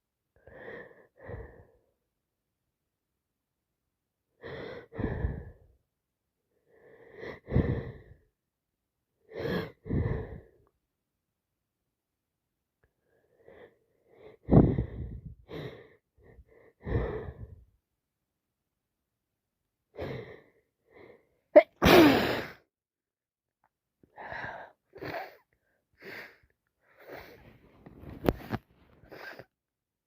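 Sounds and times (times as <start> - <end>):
person sneezing: 21.6 - 22.6.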